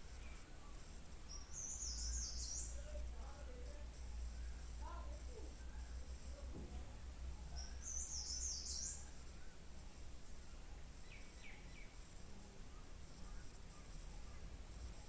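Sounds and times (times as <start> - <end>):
faint low hum: 0.0 - 15.0
birds chirping: 1.2 - 6.2, 7.4 - 9.6.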